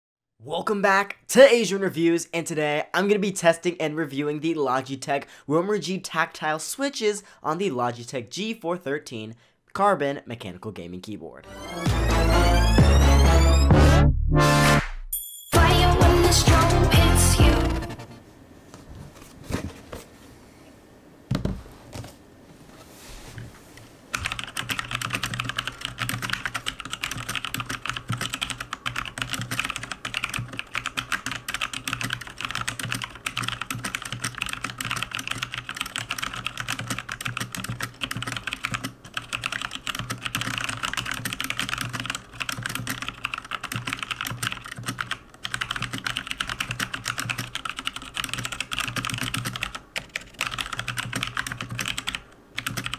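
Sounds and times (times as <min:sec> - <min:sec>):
mechanical keyboard typing: 0:24.1 - 0:52.9.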